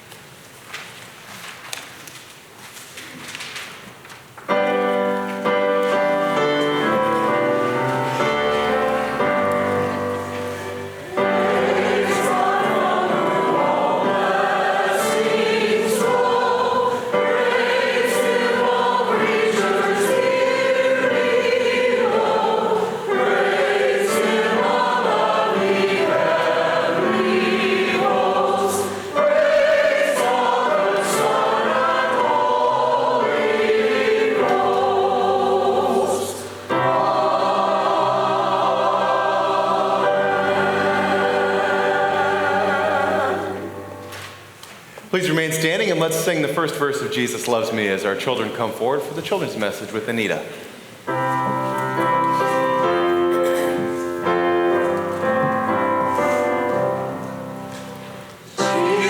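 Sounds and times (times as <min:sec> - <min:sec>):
group singing a hymn: 0:05.0 - 0:44.3, 0:52.0 - 0:59.0.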